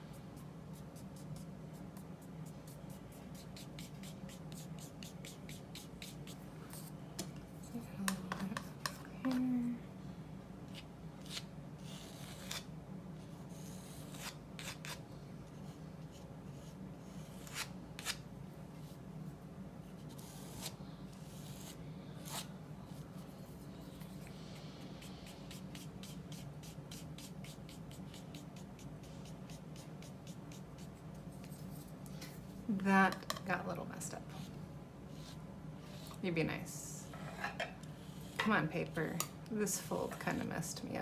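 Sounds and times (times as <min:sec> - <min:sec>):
paintbrush scraping on paper: 0:00.7 - 0:06.9, 0:34.3 - 0:36.2.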